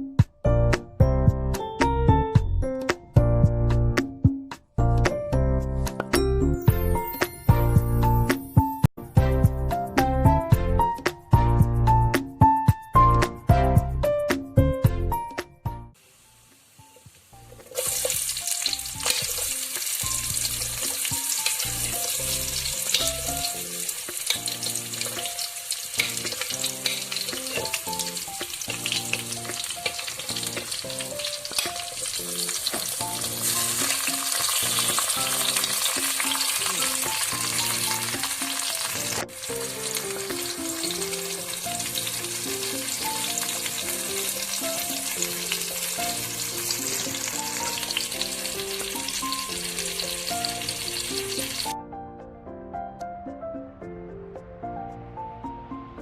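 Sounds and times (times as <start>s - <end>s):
gentle slow background music: 0.0s - 56.0s
food sizzling in oil: 6.6s - 8.9s, 16.0s - 51.8s.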